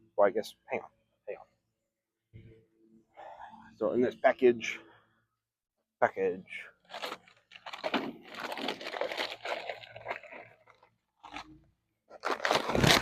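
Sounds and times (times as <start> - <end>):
packaging rustling and crinkling: 6.8 - 13.0.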